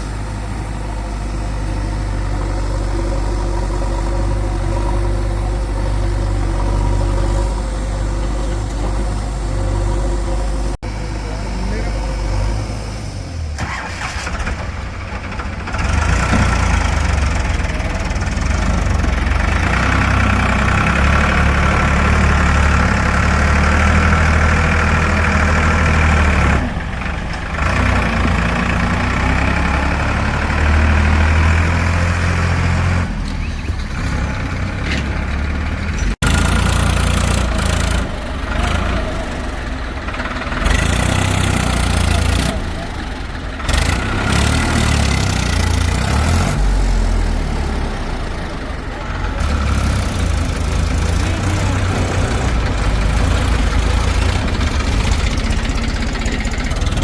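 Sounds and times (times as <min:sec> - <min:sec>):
diesel engine working under load: 0:00.0 - 0:57.0.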